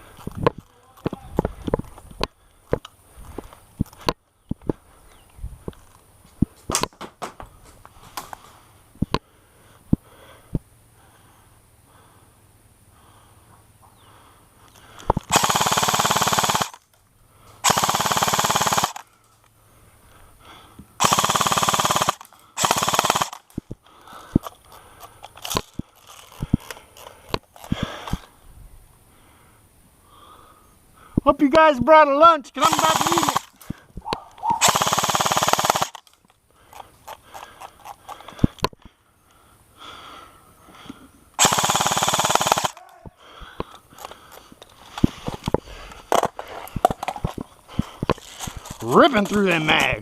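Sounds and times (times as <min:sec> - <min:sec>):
airsoft gun full-auto bursts: 0:15.3 - 0:16.9, 0:17.6 - 0:19.1, 0:21.0 - 0:23.6, 0:32.5 - 0:33.7, 0:34.6 - 0:36.2, 0:41.4 - 0:42.9.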